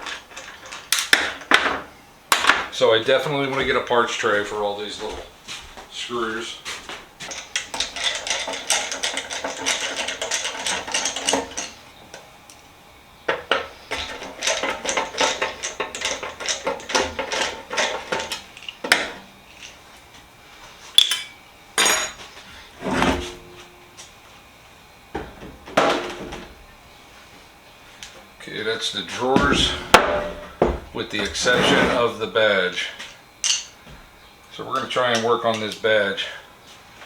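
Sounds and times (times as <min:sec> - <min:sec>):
metal screws clinking and rattling: 0:00.0 - 0:01.2, 0:07.3 - 0:11.8, 0:13.9 - 0:18.8.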